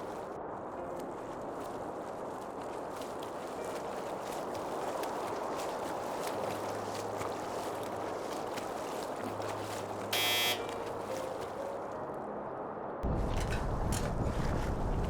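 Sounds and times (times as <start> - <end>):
wind on microphone: 13.0 - 15.0.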